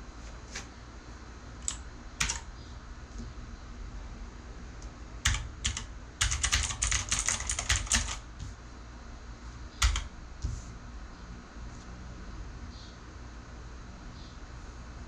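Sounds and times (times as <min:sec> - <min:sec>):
mechanical keyboard clicking: 0:01.6 - 0:02.4, 0:05.2 - 0:08.2, 0:09.8 - 0:10.1.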